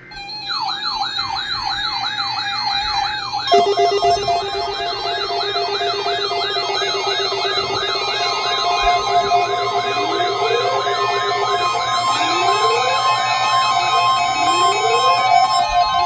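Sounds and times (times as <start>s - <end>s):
faster siren: 0.6s - 15.8s
pulsing steady tone: 3.5s - 15.3s
electronic siren sweeping up: 3.5s - 15.7s.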